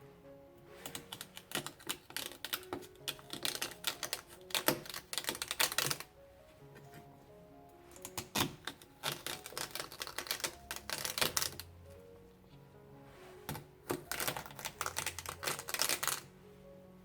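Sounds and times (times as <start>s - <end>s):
soft background music: 0.0s - 17.0s
celery leaves snapping: 1.0s - 6.0s, 8.0s - 11.6s, 13.9s - 16.3s.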